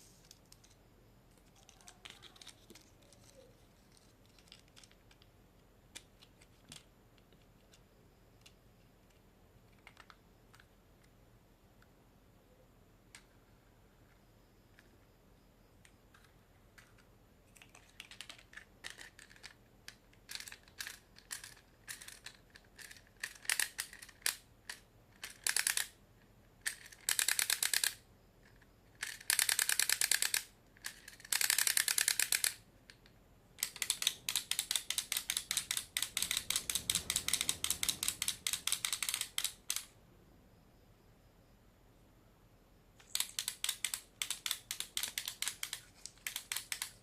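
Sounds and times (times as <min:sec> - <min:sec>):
dry mechanical clicking: 0:20.3 - 0:25.9, 0:26.6 - 0:28.0, 0:29.0 - 0:32.6, 0:33.6 - 0:39.9, 0:43.0 - 0:47.0.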